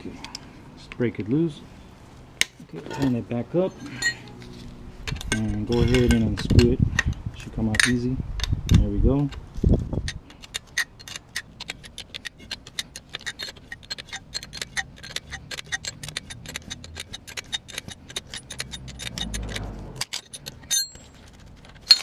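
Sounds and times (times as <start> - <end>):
short metallic ring: 3.7 - 4.4, 18.3 - 21.2
ratcheting wrench clicking: 10.0 - 22.0.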